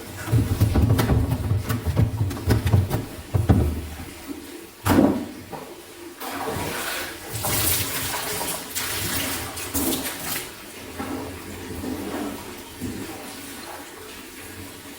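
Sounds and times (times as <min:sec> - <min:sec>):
water rushing in washing machine tub: 0:00.0 - 0:14.9.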